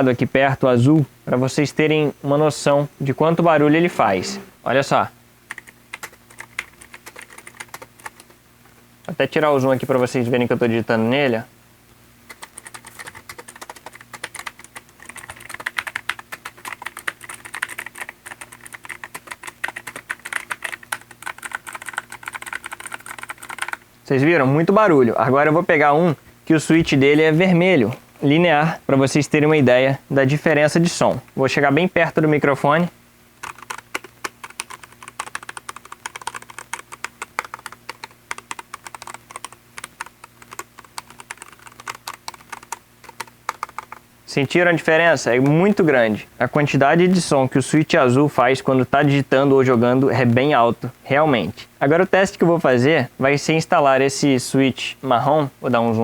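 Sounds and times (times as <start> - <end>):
mechanical keyboard typing: 5.5 - 8.3, 12.3 - 23.8, 33.4 - 44.0.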